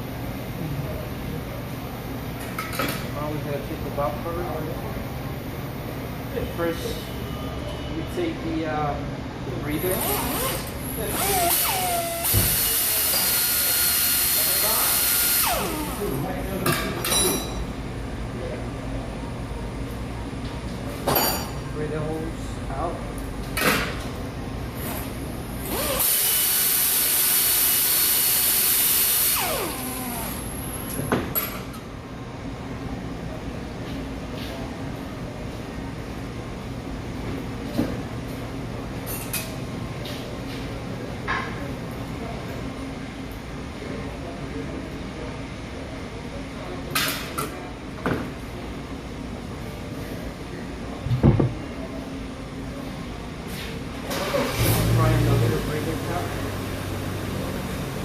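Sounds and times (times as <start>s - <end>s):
power tool whining: 9.9s - 16.0s, 25.6s - 30.6s
knock: 51.1s - 51.6s.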